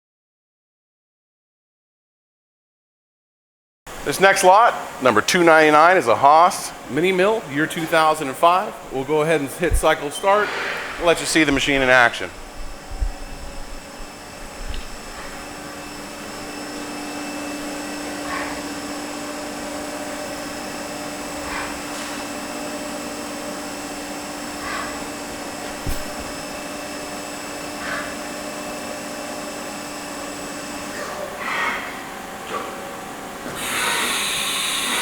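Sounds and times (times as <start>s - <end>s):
milling machine hum and whine: 3.9s - 35.0s.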